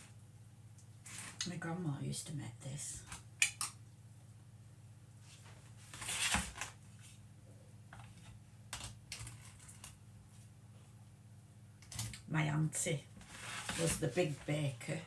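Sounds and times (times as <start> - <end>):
low steady hum: 0.0 - 15.0
utensil scraping: 13.2 - 14.6.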